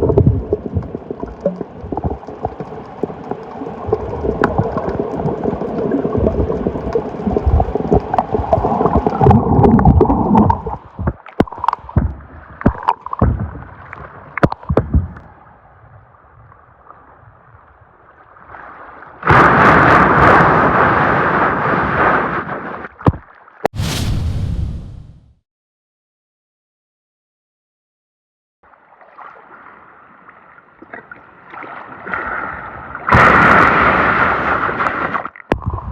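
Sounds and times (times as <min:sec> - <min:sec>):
seawater gurgling into rock hole: 0:00.0 - 0:13.2, 0:33.1 - 0:35.9.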